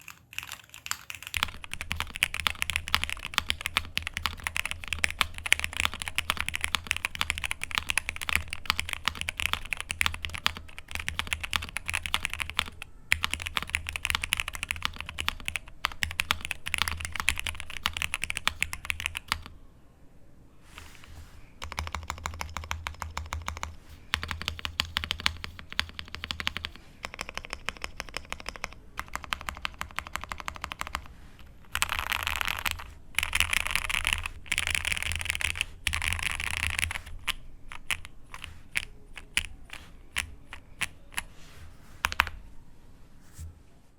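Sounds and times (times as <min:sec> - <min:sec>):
mechanical keyboard typing: 0:00.0 - 0:19.5, 0:21.6 - 0:41.3, 0:42.0 - 0:42.4.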